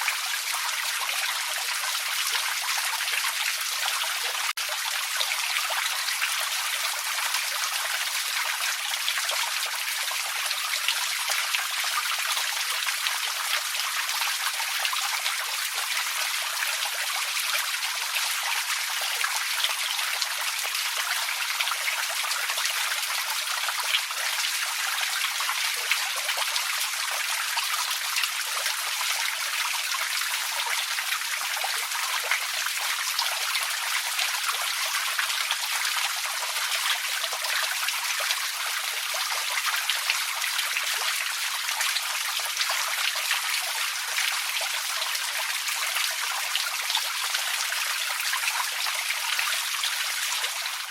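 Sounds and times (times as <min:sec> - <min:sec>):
forest creek water rushing: 0:29.5 - 0:50.9.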